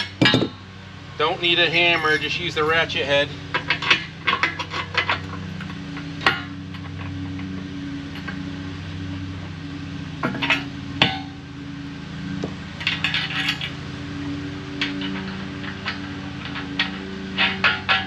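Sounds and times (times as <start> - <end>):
metal knocks and clinks: 0.0 - 0.6, 1.6 - 2.6, 12.8 - 13.8, 14.7 - 18.0
steady low background tone: 0.0 - 18.0.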